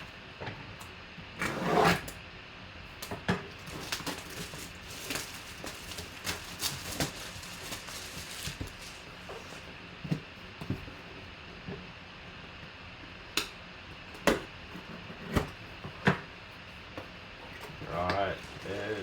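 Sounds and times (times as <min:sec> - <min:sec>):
packaging rustling and crinkling: 0:03.5 - 0:09.8, 0:17.5 - 0:19.0.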